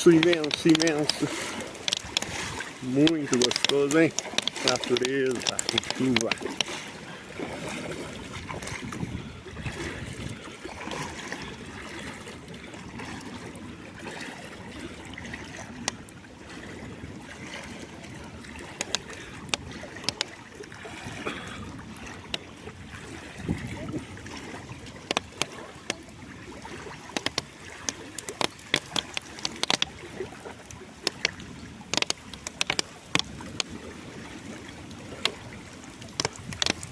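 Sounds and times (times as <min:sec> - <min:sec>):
sharp ticks: 0:00.0 - 0:06.7, 0:18.8 - 0:20.3, 0:27.1 - 0:29.9, 0:31.0 - 0:33.7, 0:36.2 - 0:36.9.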